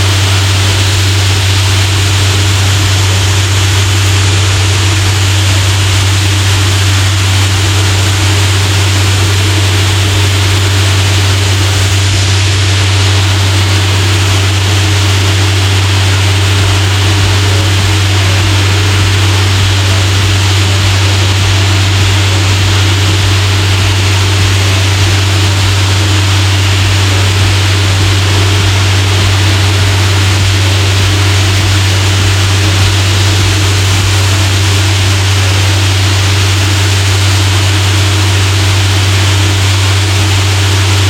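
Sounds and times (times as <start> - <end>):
compressed-air blower hissing: 0.0 - 41.0
diesel air compressor drone: 0.0 - 41.0.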